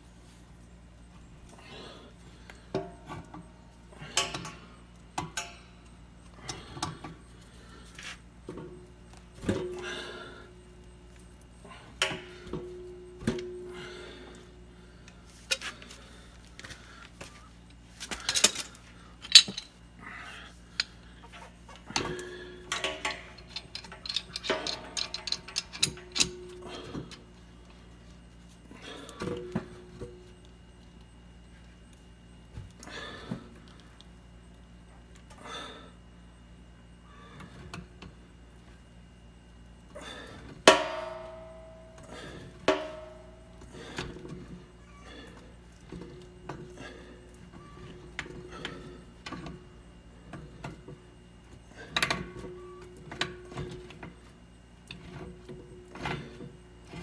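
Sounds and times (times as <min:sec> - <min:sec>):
metal parts clinking: 0:18.1 - 0:19.8, 0:21.9 - 0:27.2.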